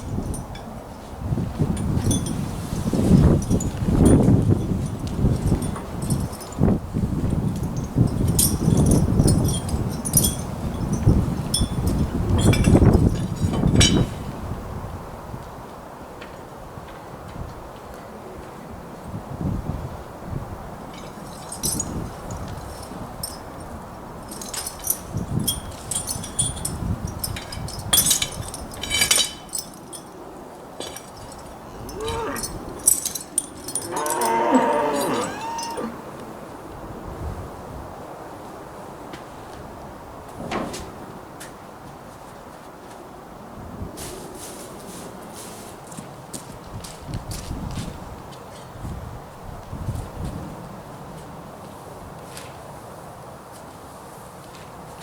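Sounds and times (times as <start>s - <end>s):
metallic clinks and jingles: 1.8s - 6.8s, 7.4s - 14.2s, 21.0s - 36.1s
metallic clinking and rattling: 24.3s - 30.2s, 30.8s - 36.0s
cows mooing: 31.7s - 33.0s, 33.6s - 36.4s.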